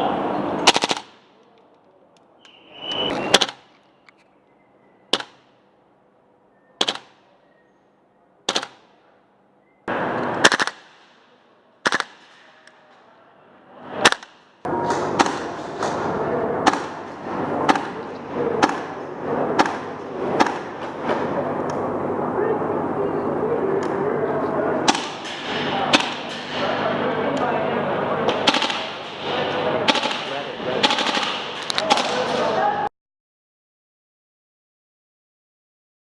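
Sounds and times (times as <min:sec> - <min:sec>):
airsoft rifle shots: 0:00.6 - 0:01.4, 0:03.2 - 0:03.7, 0:05.1 - 0:05.6, 0:06.8 - 0:07.3, 0:08.4 - 0:09.0, 0:09.9 - 0:12.9, 0:14.0 - 0:21.0, 0:24.8 - 0:26.6, 0:28.3 - 0:32.6.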